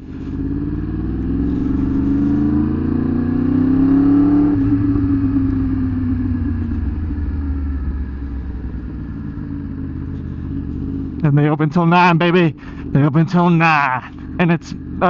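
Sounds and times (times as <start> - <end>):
motorcycle engine pulling: 0.0 - 7.3.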